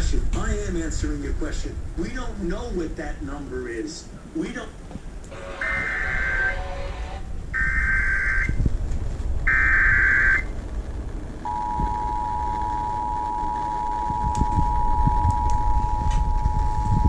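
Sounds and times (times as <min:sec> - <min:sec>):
low broadcast hum: 0:00.0 - 0:17.0
buzzing digital data bursts: 0:09.4 - 0:10.6
two-tone attention signal: 0:11.5 - 0:17.0.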